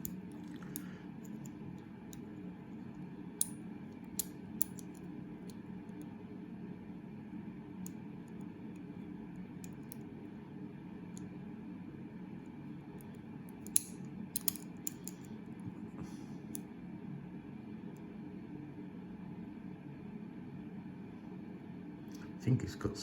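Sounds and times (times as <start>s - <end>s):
steady low hum: 0.0s - 23.0s
lock pick metallic clicks: 3.4s - 5.6s, 13.1s - 15.2s.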